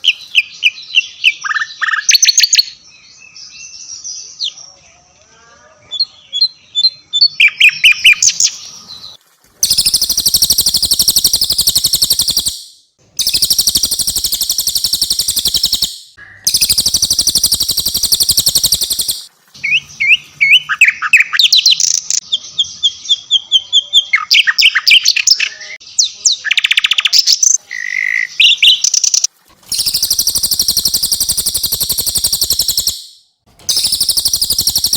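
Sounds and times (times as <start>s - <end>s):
songbirds chirping and twittering: 0.0s - 34.9s
fast rolling bird trills: 9.6s - 19.3s, 29.6s - 34.9s.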